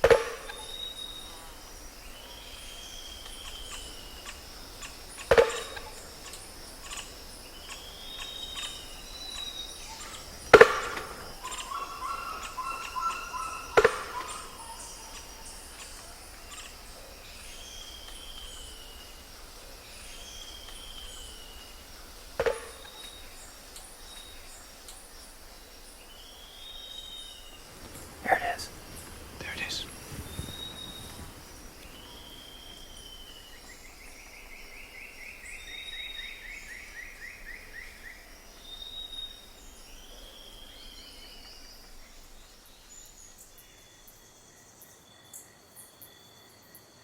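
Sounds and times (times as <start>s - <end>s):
insect hum: 0.0s - 47.0s
bird whistling: 11.4s - 15.5s.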